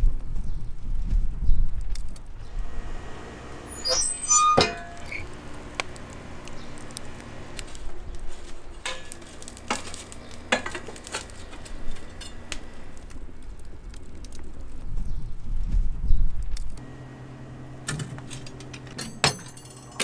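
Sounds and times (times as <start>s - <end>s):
steady low hum: 2.3s - 20.0s
food sizzling on grill: 2.5s - 13.4s.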